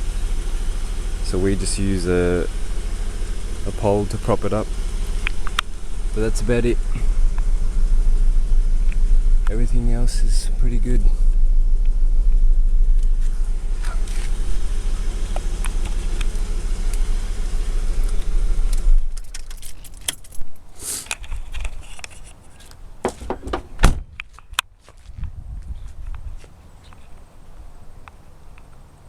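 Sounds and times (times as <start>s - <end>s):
car engine idling: 0.0s - 24.4s
sharp clicks and light knocks: 18.7s - 24.7s
keys jangling: 19.1s - 22.2s.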